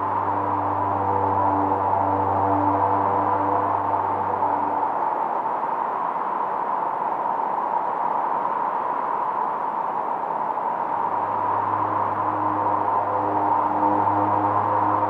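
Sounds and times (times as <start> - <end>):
low synthesizer drone: 0.0 - 5.5, 10.9 - 15.0.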